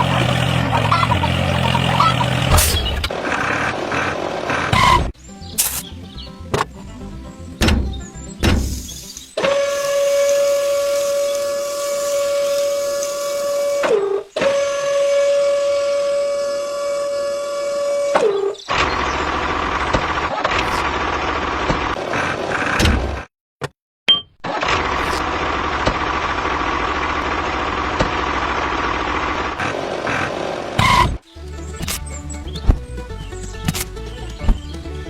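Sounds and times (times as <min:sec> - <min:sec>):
rough engine running: 0:00.0 - 0:23.1, 0:24.5 - 0:35.0
small motor humming: 0:09.4 - 0:18.4.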